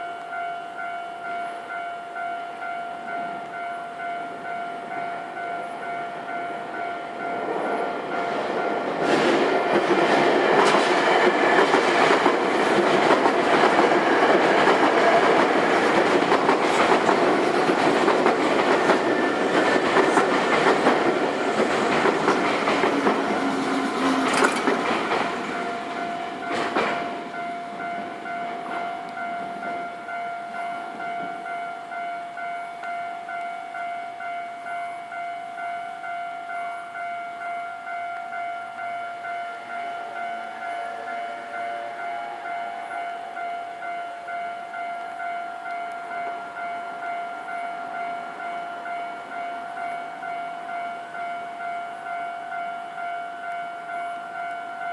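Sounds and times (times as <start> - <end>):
level-crossing warning bell: 0.0 - 54.9
train wheels clacking over rail joints: 8.5 - 27.3.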